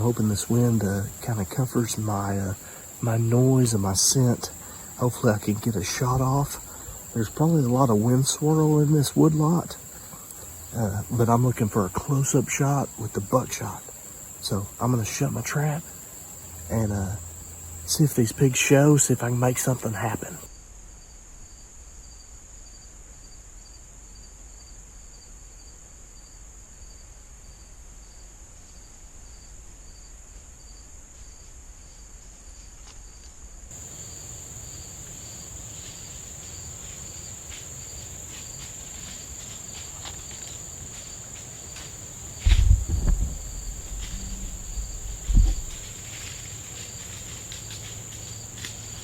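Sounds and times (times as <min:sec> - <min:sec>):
crickets and insects chirping: 0:00.0 - 0:49.0
low wind rumble: 0:33.8 - 0:48.9
dull low thump: 0:42.3 - 0:46.4.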